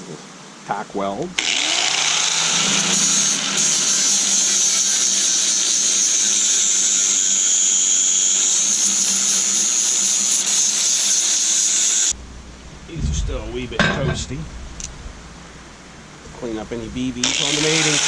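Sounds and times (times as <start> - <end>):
angle grinder grinding steel: 1.4 - 12.2, 17.2 - 18.0.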